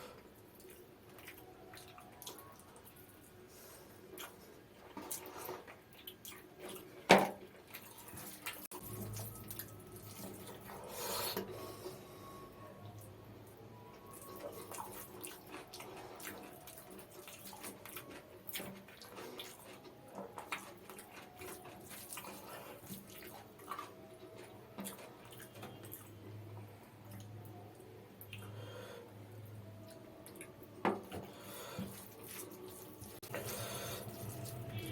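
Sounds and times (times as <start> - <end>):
wet chewing and mouth smacks: 0.4 - 3.2, 4.1 - 10.8, 13.8 - 26.3, 27.1 - 28.6, 29.8 - 31.2.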